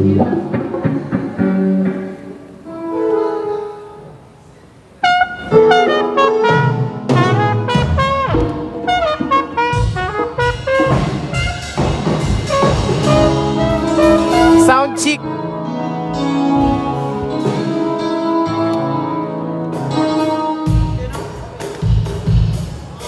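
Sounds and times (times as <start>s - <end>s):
brass horns: 5.0s - 21.2s
drums: 5.2s - 15.0s, 16.5s - 23.0s
bass: 6.7s - 23.0s.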